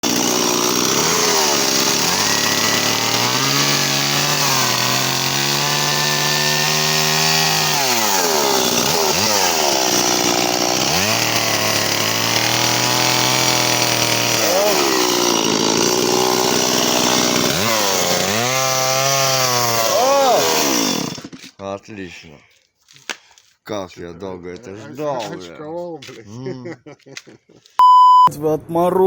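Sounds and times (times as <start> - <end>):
chainsaw revving: 0.0 - 21.6.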